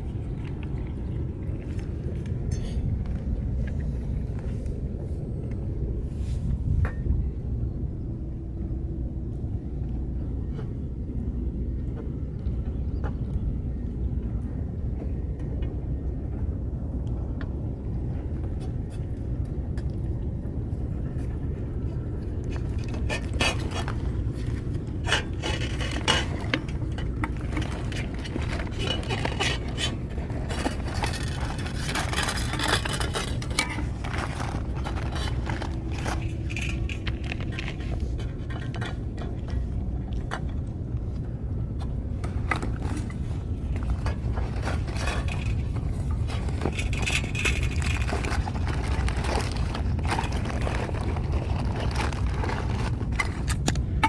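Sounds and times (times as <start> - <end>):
dishes and cans clicking and scraping: 25.0 - 39.4.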